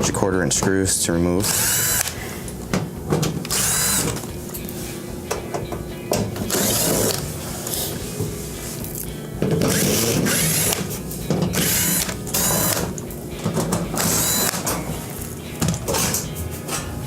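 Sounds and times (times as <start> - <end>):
nut driver backing out screws: 5.3 - 7.3, 9.4 - 14.9.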